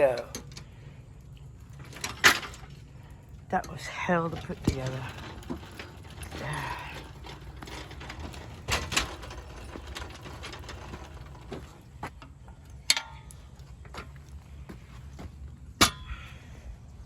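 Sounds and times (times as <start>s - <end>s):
metal clicks and rattles of dolly: 0.0s - 14.6s, 15.4s - 16.4s.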